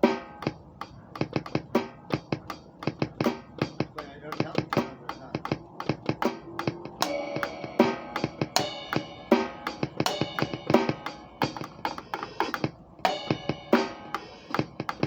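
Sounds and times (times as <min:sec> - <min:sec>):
fast drum strokes: 0:00.0 - 0:15.0
cymbal crashes: 0:05.8 - 0:11.5.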